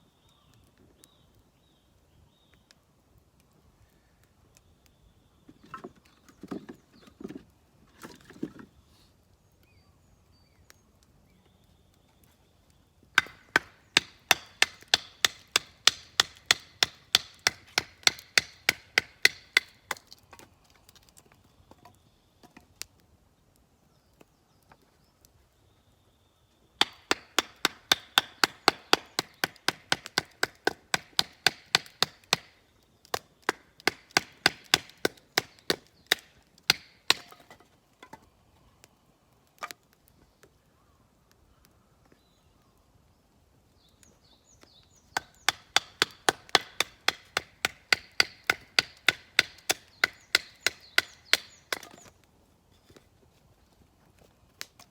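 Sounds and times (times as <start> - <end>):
chopping wood: 13.2 - 20.5, 26.8 - 38.2, 45.1 - 52.2.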